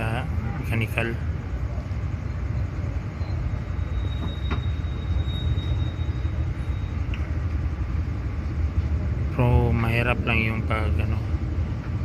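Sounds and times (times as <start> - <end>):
thin high whistle: 3.2 - 7.2.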